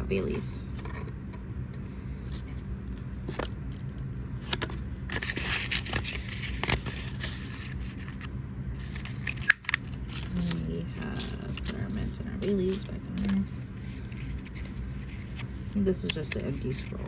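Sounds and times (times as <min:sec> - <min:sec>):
steady low hum: 0:00.0 - 0:17.0
herb packets rustling and crinkling: 0:04.4 - 0:17.0.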